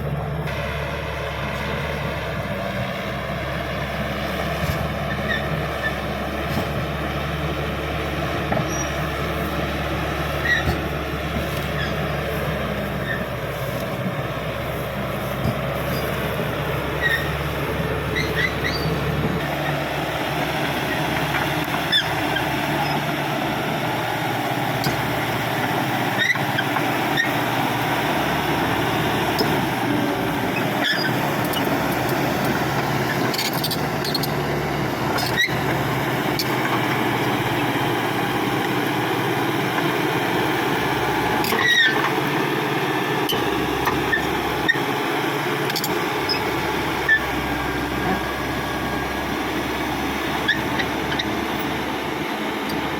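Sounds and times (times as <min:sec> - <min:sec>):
diesel engine running: 0:00.0 - 0:52.9
steel tracks squealing and clanking: 0:05.0 - 0:06.0, 0:08.6 - 0:09.1, 0:10.4 - 0:14.1, 0:17.0 - 0:17.4, 0:18.0 - 0:19.8, 0:21.9 - 0:23.1, 0:26.1 - 0:27.4, 0:30.4 - 0:34.4, 0:35.1 - 0:36.6, 0:41.4 - 0:42.2, 0:50.4 - 0:51.9.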